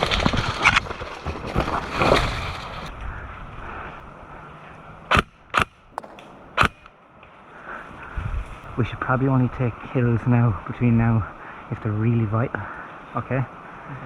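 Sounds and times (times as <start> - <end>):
airsoft gunfire cracks: 6.0 - 6.9.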